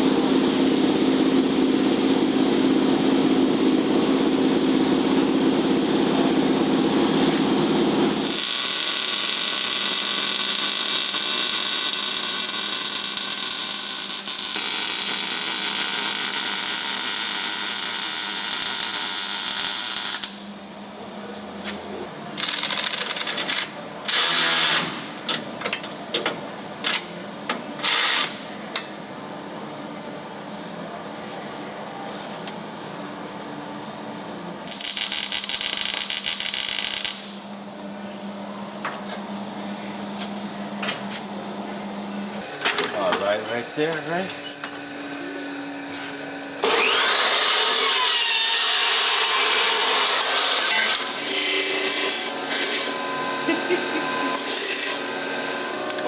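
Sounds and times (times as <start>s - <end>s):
high-pitched tool running: 8.1s - 20.4s, 34.6s - 37.3s, 46.6s - 56.0s
power tool motor hum: 46.6s - 56.0s.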